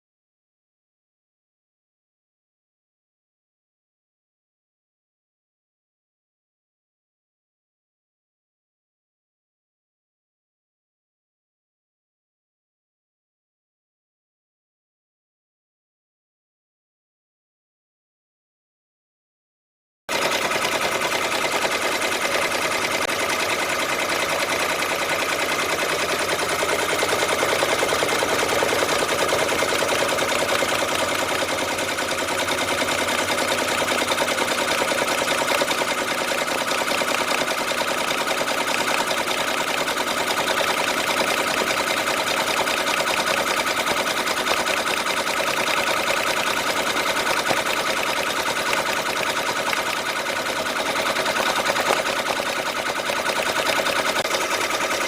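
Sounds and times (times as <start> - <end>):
embroidery machine stitching: 20.1 - 55.0.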